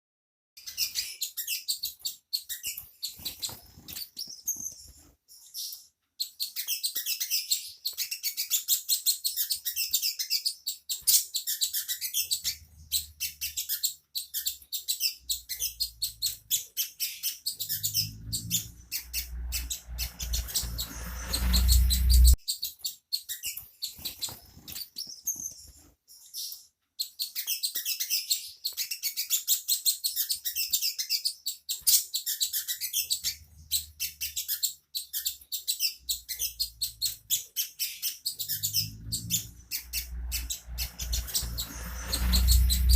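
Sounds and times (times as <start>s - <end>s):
bird singing sharp high chirps: 0.6s - 42.9s
low rumble: 17.8s - 22.4s, 38.7s - 42.9s.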